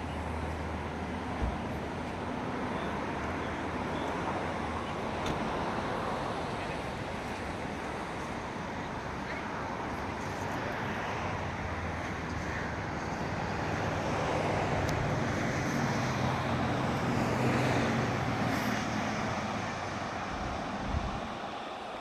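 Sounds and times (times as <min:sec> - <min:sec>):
low engine hum: 0:00.0 - 0:22.0
ocean surf rushing: 0:17.9 - 0:22.0.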